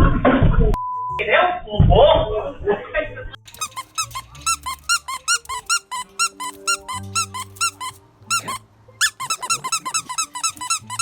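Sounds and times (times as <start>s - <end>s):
squeaky chirping music notes: 3.5s - 11.0s.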